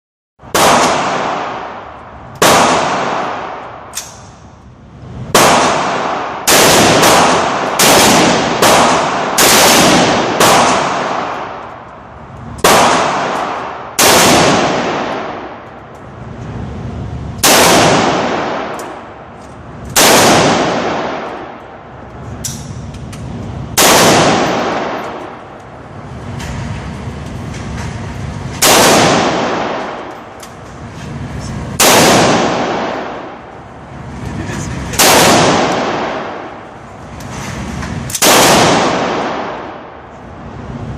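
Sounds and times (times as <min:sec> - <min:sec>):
rifle shots echoing: 0:00.4 - 0:04.6, 0:05.3 - 0:11.8, 0:12.6 - 0:15.8, 0:17.4 - 0:19.2, 0:19.9 - 0:22.9, 0:23.6 - 0:26.2, 0:28.2 - 0:30.4, 0:31.7 - 0:33.6, 0:34.8 - 0:36.8, 0:38.1 - 0:40.1.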